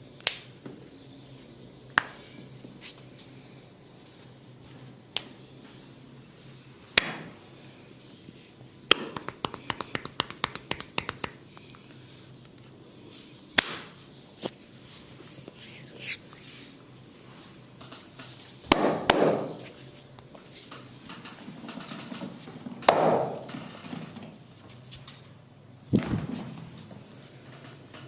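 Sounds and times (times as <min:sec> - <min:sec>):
fast fingertip tapping: 0:08.9 - 0:11.4
hands rubbing skin: 0:09.1 - 0:11.8.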